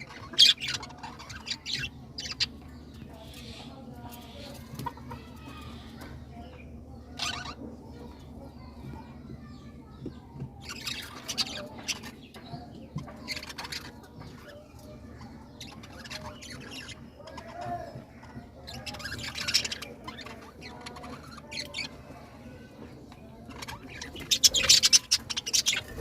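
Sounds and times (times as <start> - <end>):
birds calling: 0.0 - 26.0.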